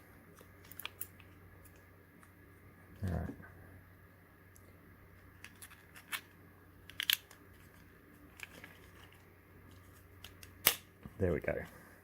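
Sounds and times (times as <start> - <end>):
plastic parts clicking and scraping: 5.4 - 10.8.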